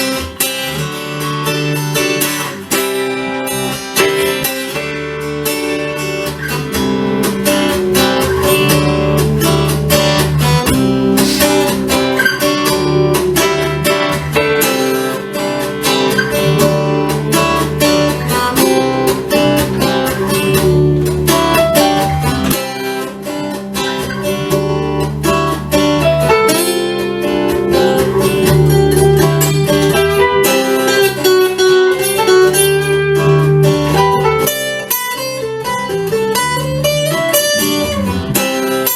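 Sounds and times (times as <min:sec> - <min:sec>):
acoustic guitar playing: 0:00.0 - 0:38.9
repeating bass line: 0:06.4 - 0:14.6, 0:15.7 - 0:22.5, 0:26.0 - 0:30.4.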